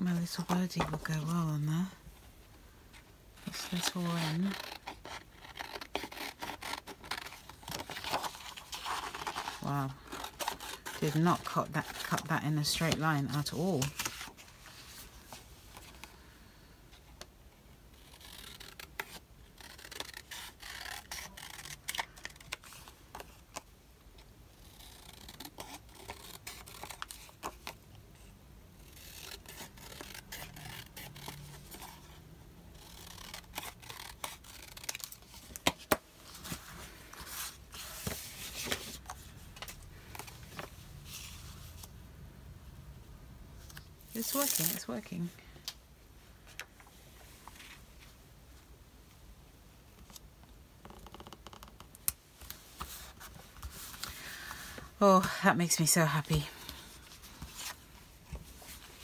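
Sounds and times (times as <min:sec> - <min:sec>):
paper scraping and shuffling: 0:32.8 - 0:41.9, 0:43.6 - 0:45.2, 0:52.4 - 0:54.8.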